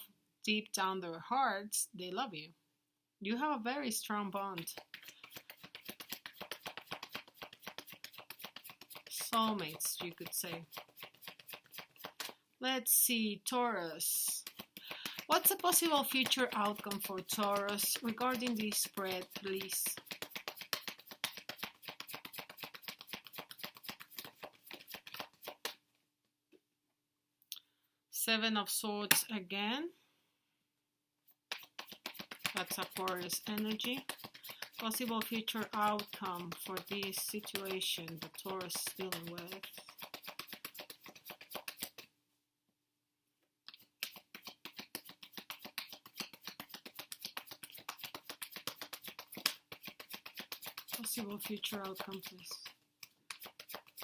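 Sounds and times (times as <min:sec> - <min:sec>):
cards being shuffled: 0:04.6 - 0:12.4, 0:14.4 - 0:25.8, 0:31.5 - 0:42.1, 0:43.8 - 0:54.0.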